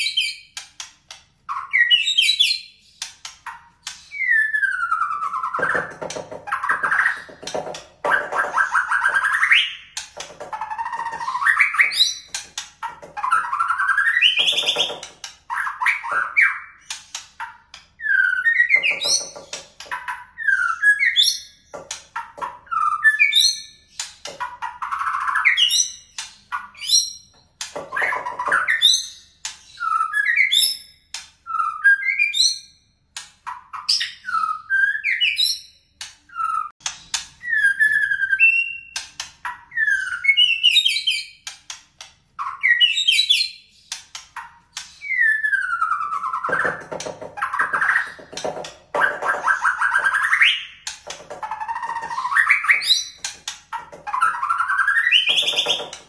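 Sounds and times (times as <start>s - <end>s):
songbird singing whistled notes: 4.0s - 5.9s.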